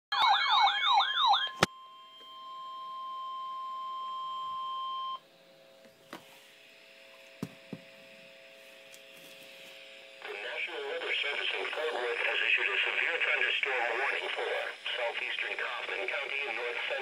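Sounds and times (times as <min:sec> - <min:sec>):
wailing electronic sirens: 0:00.1 - 0:05.2
weather radio warning tone: 0:10.2 - 0:17.0.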